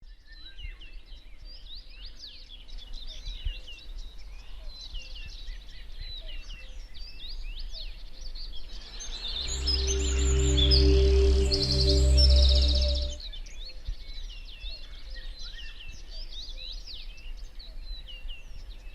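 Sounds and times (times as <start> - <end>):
low rumble: 8.7 - 13.2
music with sustained tones and bass: 8.7 - 13.2.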